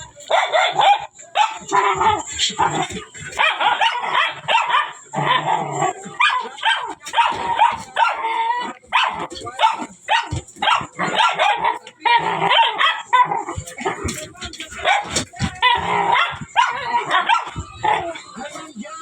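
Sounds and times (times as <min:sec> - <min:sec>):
dogs barking excitedly: 0:00.0 - 0:19.0.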